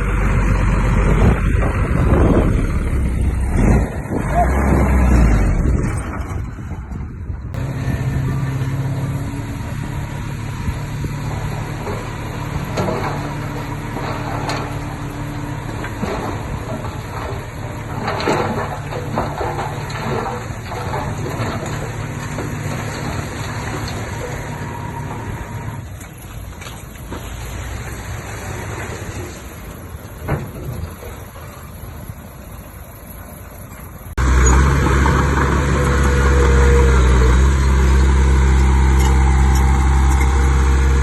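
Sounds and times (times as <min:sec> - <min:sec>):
diesel earthmoving machinery running: 0:00.0 - 0:41.0
metallic clanks and knocks: 0:11.2 - 0:24.5.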